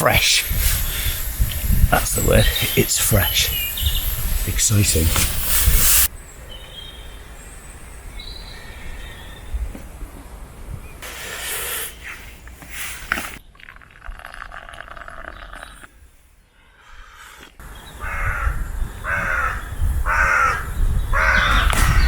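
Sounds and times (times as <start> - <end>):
bird calling: 17.6 - 22.0.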